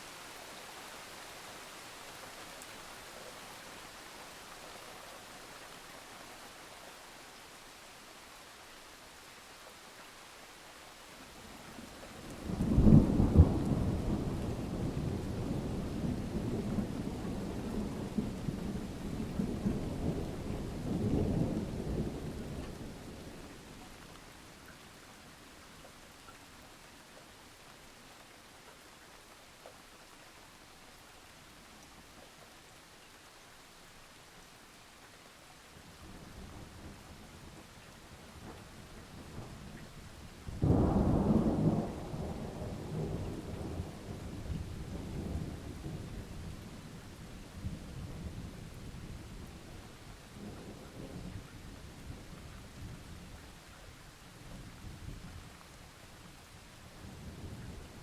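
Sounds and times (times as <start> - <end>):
steady rain hiss: 0.0 - 58.0
thunder rumbling: 40.6 - 46.4.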